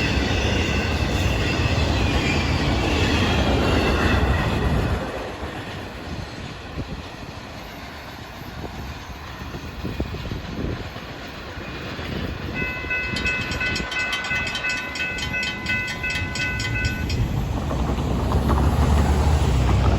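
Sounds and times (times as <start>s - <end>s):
freight train rumbling past: 0.0s - 19.9s
wheels clacking over rails: 10.2s - 19.9s.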